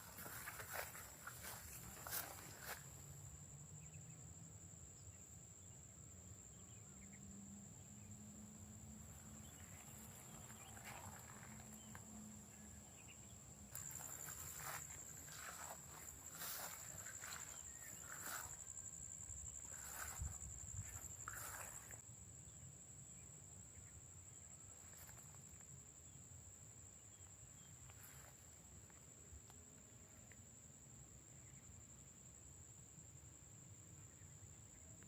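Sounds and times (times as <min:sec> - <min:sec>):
soft footsteps: 0:00.0 - 0:03.0, 0:09.5 - 0:12.2, 0:13.7 - 0:22.0
high-pitched insect trill: 0:00.0 - 0:05.8, 0:06.4 - 0:29.0.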